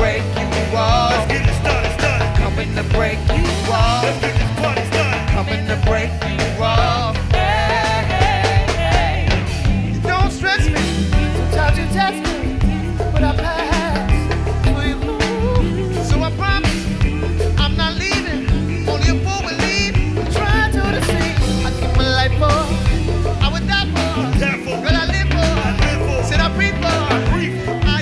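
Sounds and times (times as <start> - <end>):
live go-go band music: 0.0 - 28.0.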